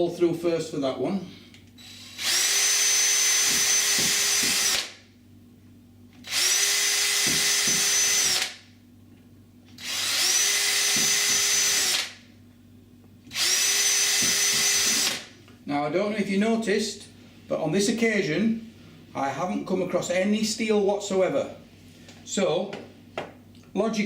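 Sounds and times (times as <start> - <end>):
power drill whining: 1.8 - 5.0, 6.2 - 8.6, 9.8 - 12.2, 13.3 - 15.3.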